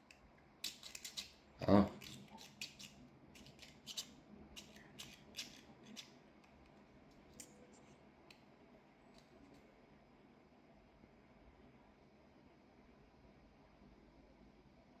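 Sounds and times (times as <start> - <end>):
plastic fidget toy clicking: 2.0 - 6.1.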